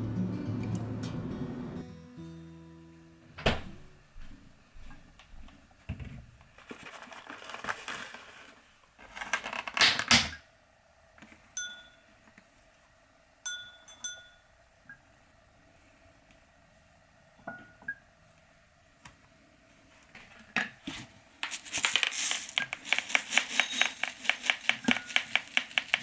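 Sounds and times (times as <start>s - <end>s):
rustling: 6.4s - 9.8s, 19.9s - 26.0s
bright ringing clinks: 11.6s - 12.0s, 13.5s - 14.5s
objects clattering: 20.2s - 26.0s
objects knocking and clicking: 21.4s - 26.0s.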